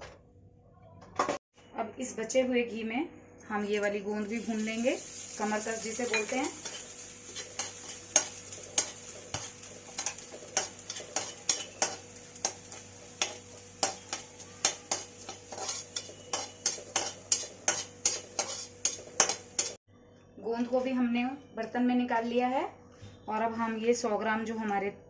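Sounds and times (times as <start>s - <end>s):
faint frying sizzle: 3.8s - 19.8s
spoon stirring and scraping pan: 4.6s - 19.8s.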